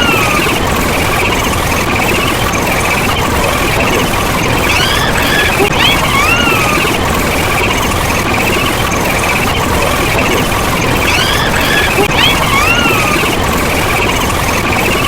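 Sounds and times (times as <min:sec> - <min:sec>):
gliding whistle-like tones: 0:00.0 - 0:15.0
warbling tones: 0:00.0 - 0:15.0
jumble of sound effects: 0:03.7 - 0:07.8, 0:10.1 - 0:13.4.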